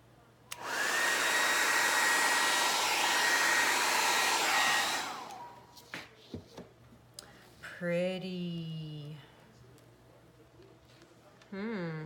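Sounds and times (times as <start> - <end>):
hair dryer running: 0.5 - 5.7.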